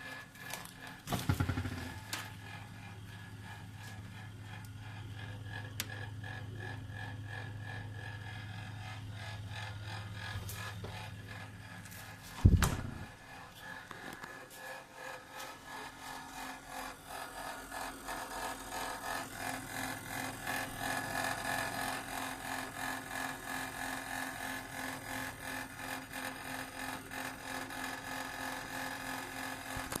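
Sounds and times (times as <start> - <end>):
refrigerator compressor humming: 0.0 - 30.0
buzzing rattle: 0.4 - 30.0.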